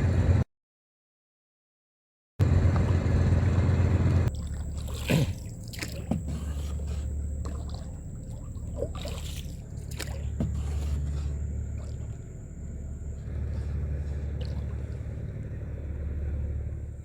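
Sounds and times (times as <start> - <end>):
boat motor humming: 0.0 - 0.4, 2.4 - 17.0
water splashes: 4.3 - 16.0.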